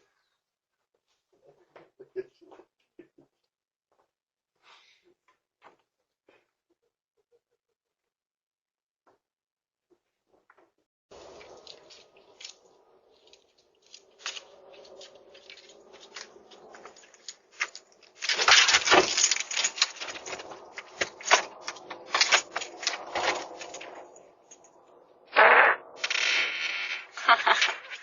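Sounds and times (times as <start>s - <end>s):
sputtering fart: 25.3s - 28.0s.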